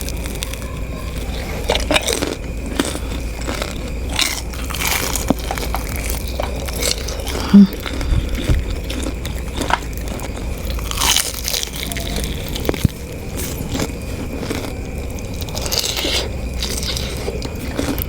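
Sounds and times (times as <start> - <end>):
crunchy biting and chewing: 0.0 - 18.0.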